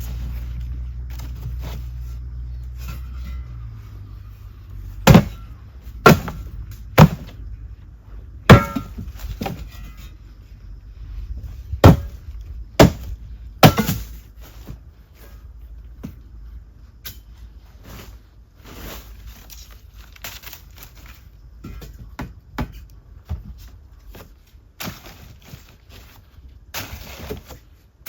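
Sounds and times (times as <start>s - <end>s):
low steady hum: 0.0s - 28.0s
sharp ringing knocks: 8.5s - 9.1s.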